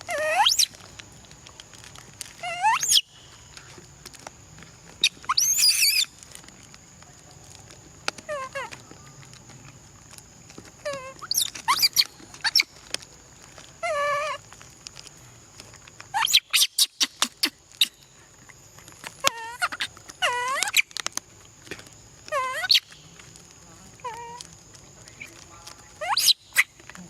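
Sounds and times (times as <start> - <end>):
baby monkey crying: 0.0 - 0.8, 2.4 - 3.1, 5.1 - 6.1, 10.8 - 12.7, 13.8 - 14.4, 16.1 - 17.9, 19.2 - 20.9, 22.2 - 23.0, 24.0 - 24.4, 26.0 - 26.7
monkey squeaks: 0.1 - 0.8, 2.4 - 3.2, 5.0 - 6.1, 10.8 - 12.8, 13.8 - 14.4, 16.1 - 18.0, 19.2 - 21.0, 22.3 - 23.0, 24.0 - 24.4, 26.0 - 26.8.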